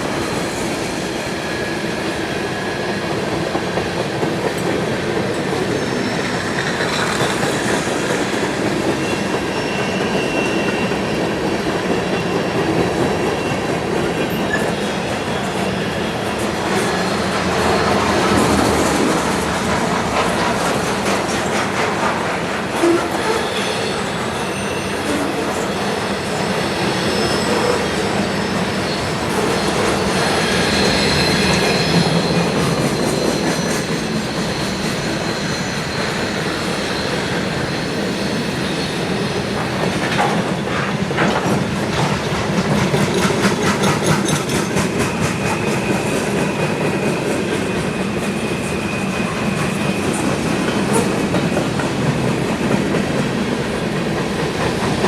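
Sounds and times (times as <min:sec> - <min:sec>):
freight train rumbling past: 0:00.0 - 0:55.0
wheel squeals: 0:08.5 - 0:19.1, 0:22.8 - 0:39.2.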